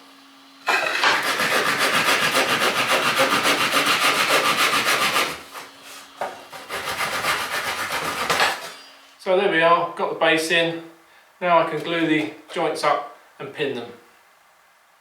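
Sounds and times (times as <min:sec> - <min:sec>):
handsaw cutting plywood: 0:00.7 - 0:05.8, 0:06.5 - 0:08.7.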